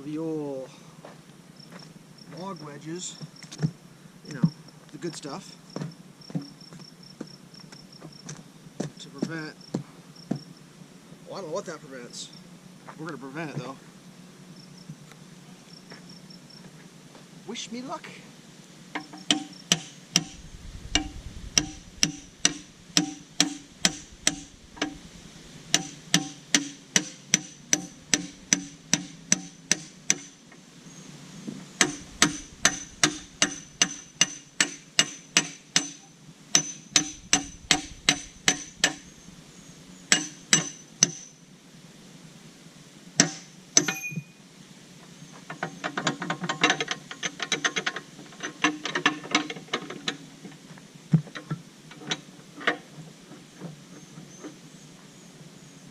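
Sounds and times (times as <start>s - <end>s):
hammer blows on steel: 19.0s - 30.4s, 31.8s - 39.4s.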